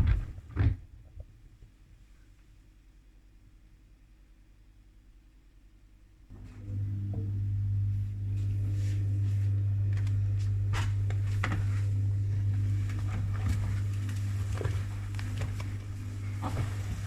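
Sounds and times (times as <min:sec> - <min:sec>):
washing machine humming: 0:06.3 - 0:17.0.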